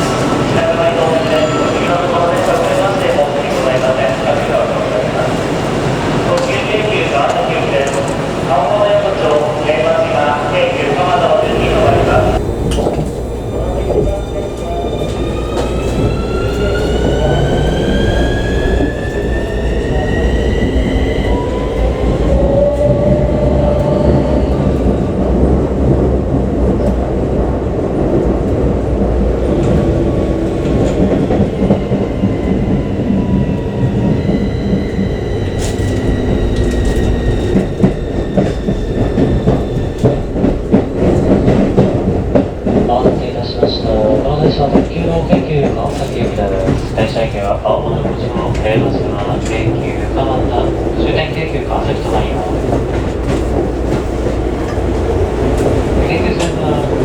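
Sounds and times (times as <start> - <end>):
wheels rumbling on track: 0.0 - 57.0
rail-joint clicks: 6.2 - 9.4, 11.1 - 20.6, 33.5 - 57.0.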